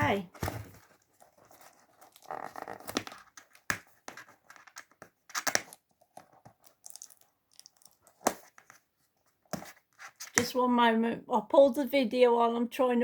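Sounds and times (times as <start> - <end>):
packaging rustling and scraping: 0.3 - 6.7.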